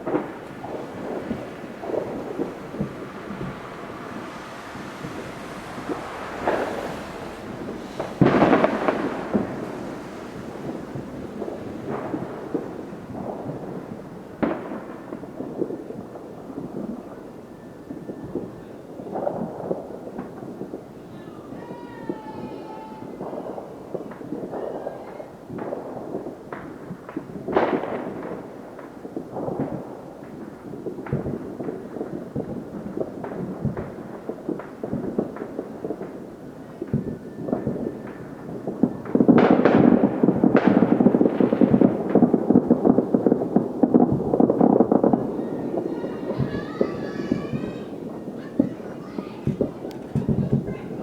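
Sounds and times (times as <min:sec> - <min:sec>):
fireworks bangs and crackling: 0:00.0 - 0:51.0.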